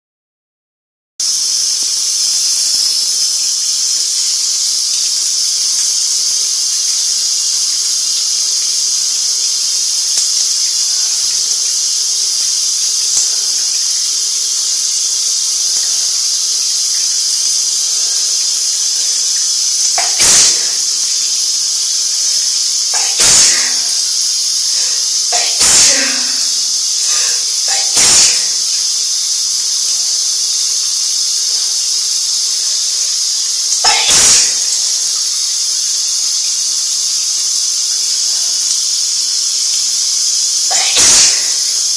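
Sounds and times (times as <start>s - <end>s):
shower spray hissing: 1.2s - 41.9s
person sneezing: 19.9s - 21.2s, 22.9s - 28.8s, 33.8s - 34.9s, 40.7s - 41.8s.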